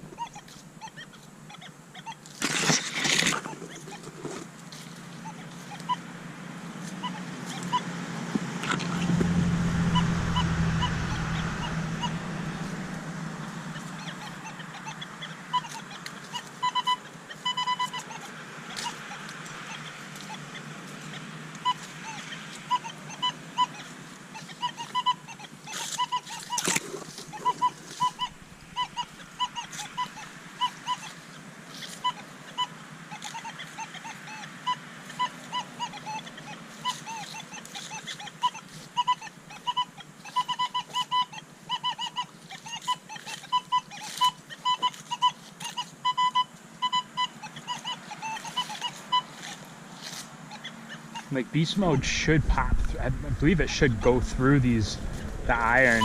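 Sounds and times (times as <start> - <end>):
low hum: 7.8 - 14.4, 51.4 - 56.0.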